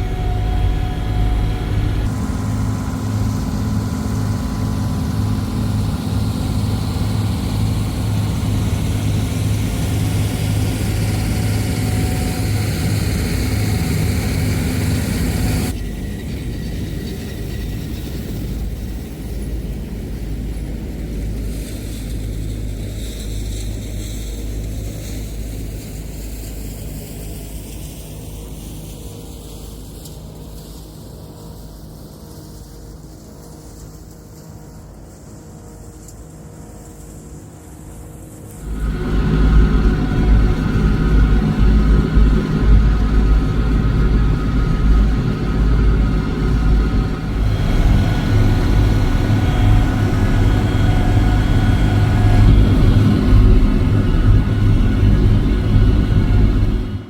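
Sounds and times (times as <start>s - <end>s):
machinery clatter: 0.0s - 19.1s, 38.5s - 57.0s
combine harvester engine drone: 0.0s - 57.0s.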